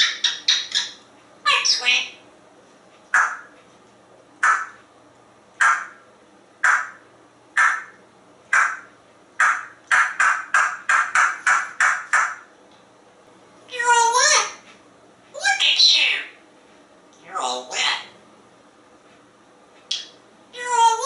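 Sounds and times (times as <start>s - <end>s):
parrot squawking: 0.0s - 2.2s, 3.1s - 3.5s, 4.4s - 4.8s, 5.6s - 6.0s, 6.6s - 7.0s, 7.6s - 12.5s, 13.8s - 14.6s, 15.4s - 16.4s, 17.2s - 18.2s.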